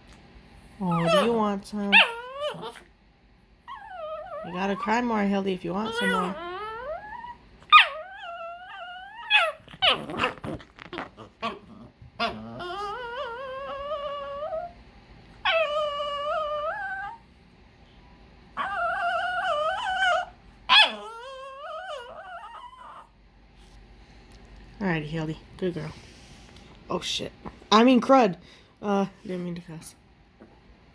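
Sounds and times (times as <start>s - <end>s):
dog whining: 0.9s - 2.9s, 3.6s - 5.0s, 5.7s - 14.8s, 15.4s - 17.2s, 18.6s - 23.2s.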